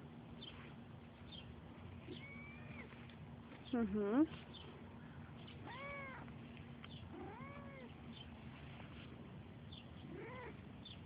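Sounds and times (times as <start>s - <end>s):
cat meowing: 2.1s - 2.9s, 5.6s - 6.3s, 7.1s - 7.9s, 10.1s - 10.6s.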